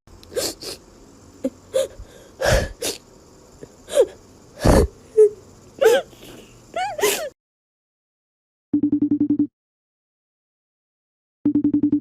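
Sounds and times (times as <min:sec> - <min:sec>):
cat sneezing: 0:00.3 - 0:00.8.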